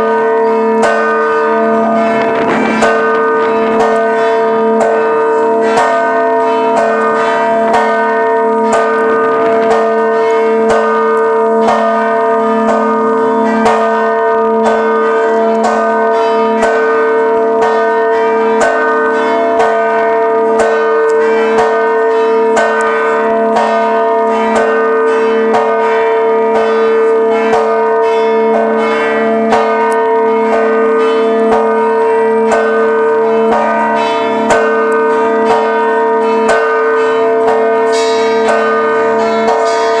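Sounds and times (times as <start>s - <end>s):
deep humming bell tone: 0.0s - 17.6s
church bells ringing a peal: 0.0s - 40.0s.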